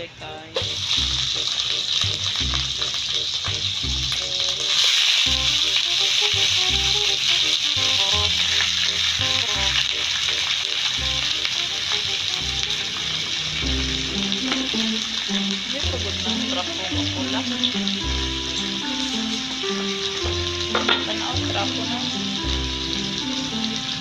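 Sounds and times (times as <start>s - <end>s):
food sizzling in a pan: 0.0s - 24.0s
background music with pulsing bass: 11.0s - 24.0s.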